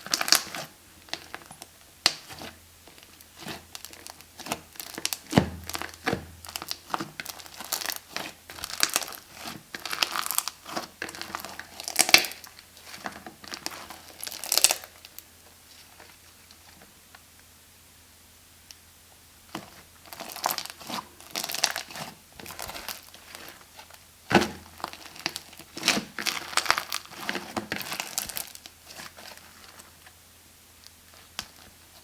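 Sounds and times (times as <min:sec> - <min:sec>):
slime crackling when squeezed: 0:03.3 - 0:12.6, 0:13.5 - 0:15.0.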